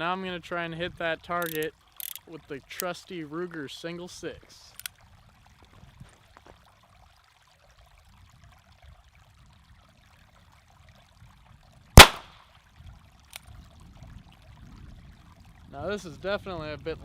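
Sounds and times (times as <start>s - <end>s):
revolver gunshot with echo: 12.0s - 12.3s.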